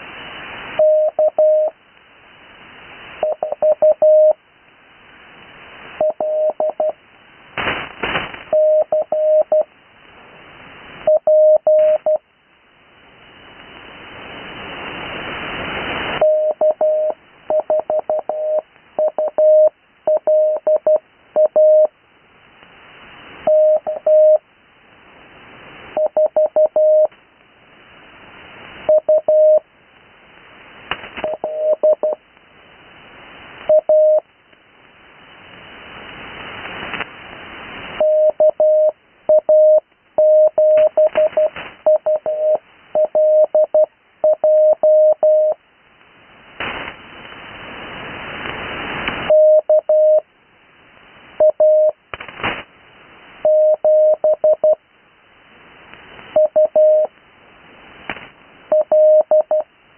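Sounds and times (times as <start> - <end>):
radio crackle: 0.0 - 12.3, 13.1 - 54.8, 55.5 - 59.8
radio band noise hiss: 0.0 - 59.9
morse code tone: 0.8 - 1.7, 3.2 - 4.4, 6.0 - 7.0, 8.5 - 9.7, 11.1 - 12.2, 16.2 - 21.9, 23.5 - 24.4, 26.0 - 27.1, 28.9 - 29.6, 31.2 - 32.2, 38.0 - 45.6, 49.3 - 50.2, 51.4 - 52.0, 53.4 - 54.8, 56.4 - 57.1, 58.7 - 59.7.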